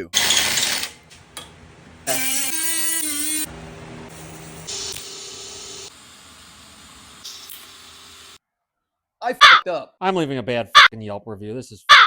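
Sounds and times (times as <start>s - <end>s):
power drill whining: 0.2s - 1.2s, 2.1s - 3.5s.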